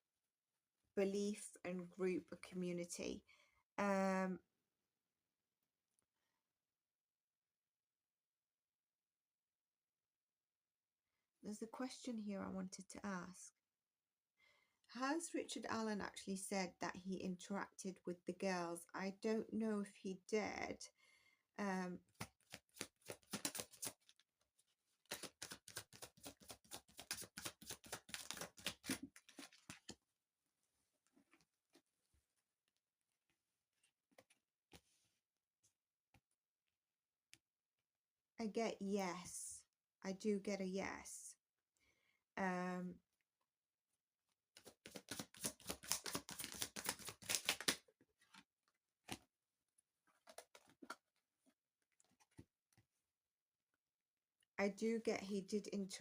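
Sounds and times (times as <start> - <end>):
cards tapping: 22.1 - 24.1, 25.1 - 29.8, 44.6 - 47.8
cards being shuffled: 22.1 - 24.2, 25.0 - 30.0, 44.6 - 48.4, 50.2 - 51.0.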